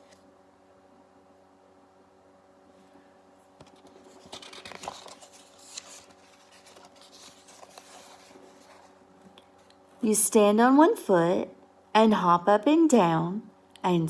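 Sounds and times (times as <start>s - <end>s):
faint steady hum: 0.0s - 14.0s
paper page rustling: 3.6s - 9.0s.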